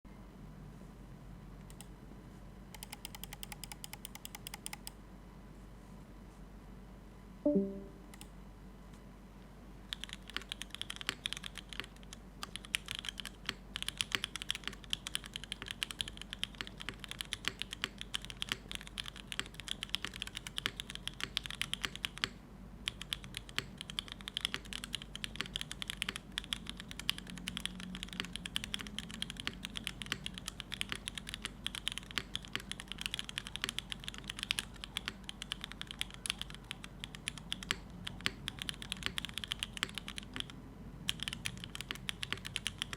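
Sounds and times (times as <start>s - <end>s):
fast mechanical keyboard typing: 2.8s - 5.0s, 9.9s - 42.9s.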